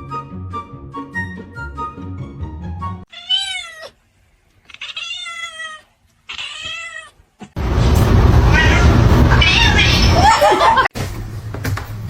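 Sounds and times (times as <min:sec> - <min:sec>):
cat meowing: 0:03.1 - 0:04.0, 0:04.6 - 0:07.2, 0:08.5 - 0:10.4.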